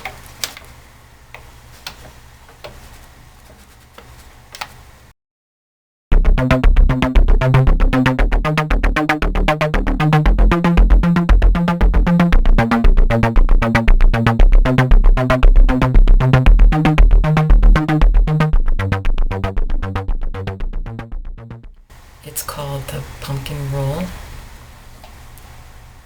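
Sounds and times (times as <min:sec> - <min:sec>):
synthesizer disco bass loop: 0:06.1 - 0:21.7.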